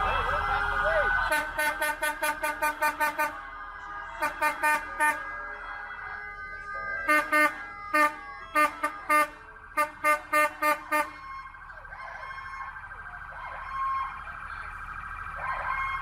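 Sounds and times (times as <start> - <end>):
faint siren wailing: 0.0 - 16.0
vehicle horns honking: 0.4 - 11.6.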